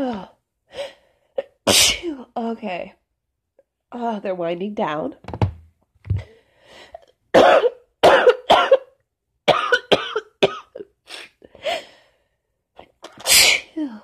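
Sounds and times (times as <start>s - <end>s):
woman coughing: 1.4s - 2.2s, 7.4s - 8.9s, 9.5s - 11.3s.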